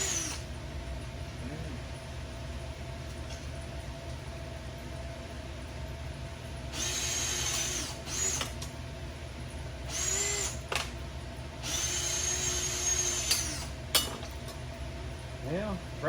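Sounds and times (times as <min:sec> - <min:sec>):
electric drill whining: 0:00.0 - 0:00.5, 0:06.7 - 0:08.6, 0:09.9 - 0:10.9, 0:11.6 - 0:13.8.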